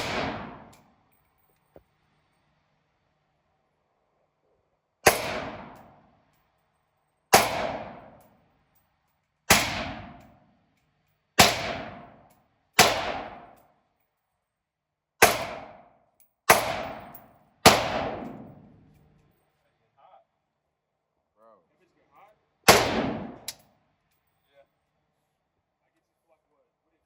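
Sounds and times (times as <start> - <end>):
gunshots with ringing echo: 0.0 - 0.8, 5.0 - 6.0, 7.3 - 8.2, 9.5 - 10.3, 11.4 - 12.2, 12.8 - 13.6, 15.2 - 15.8, 16.5 - 18.8, 22.7 - 23.5.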